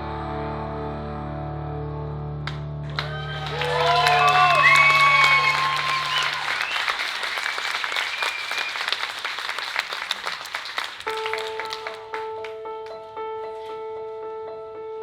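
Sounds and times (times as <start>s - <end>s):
audience applauding: 2.5s - 13.0s.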